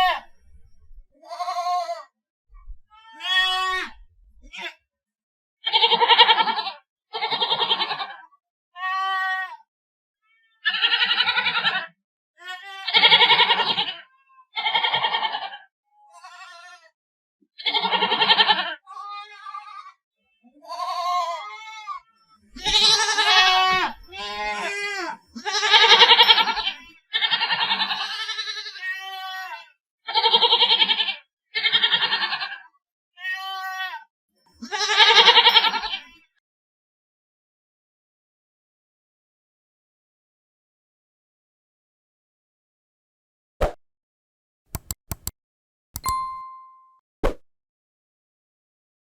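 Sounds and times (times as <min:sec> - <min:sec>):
goats bleating: 0:00.0 - 0:00.3, 0:01.2 - 0:02.0, 0:03.2 - 0:03.9, 0:07.3 - 0:08.1, 0:17.6 - 0:18.7, 0:20.6 - 0:21.9, 0:22.6 - 0:29.6, 0:34.6 - 0:36.1.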